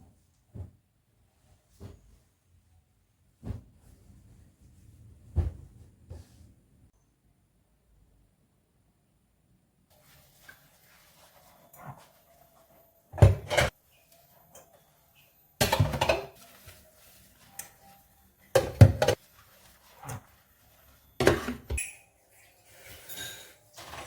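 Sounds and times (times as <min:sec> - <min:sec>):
dishes and cutlery clattering: 0:21.2 - 0:24.0.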